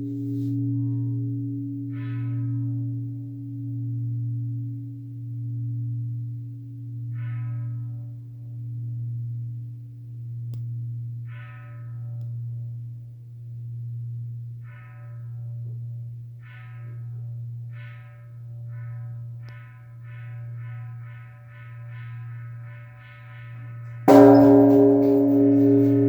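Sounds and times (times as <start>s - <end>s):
temple bell humming: 24.1s - 26.0s.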